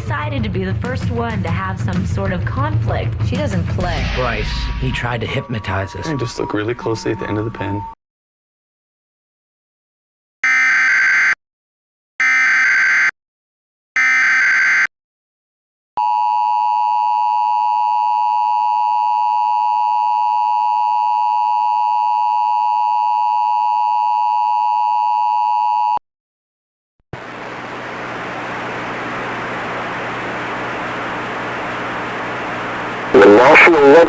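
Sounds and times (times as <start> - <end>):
static hiss: 27.2 - 34.0.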